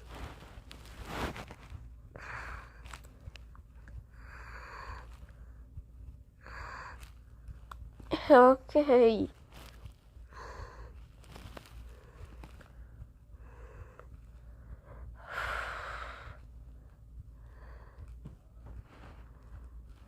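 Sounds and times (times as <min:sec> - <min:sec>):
faint low hum: 0:00.0 - 0:20.0
person breathing: 0:02.1 - 0:03.3, 0:04.0 - 0:05.7, 0:06.4 - 0:07.6, 0:10.2 - 0:19.8.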